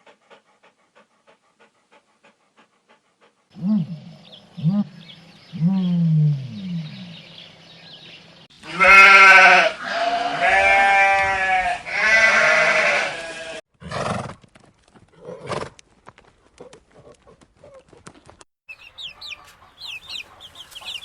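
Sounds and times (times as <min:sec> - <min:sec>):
sheep bleating: 0:08.6 - 0:13.6.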